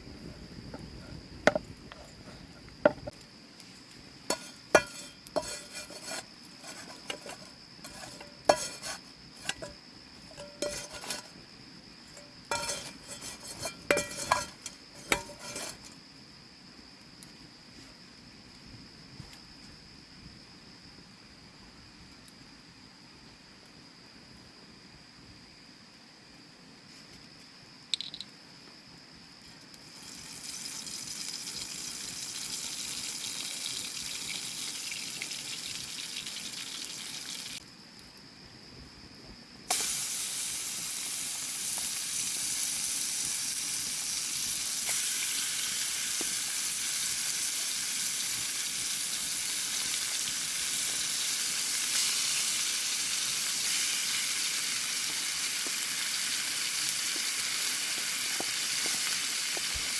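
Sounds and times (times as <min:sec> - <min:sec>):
thin insect tone: 0:00.0 - 0:59.9
food sizzling in a pan: 0:02.8 - 0:16.0, 0:29.8 - 0:37.6, 0:39.7 - 0:59.9.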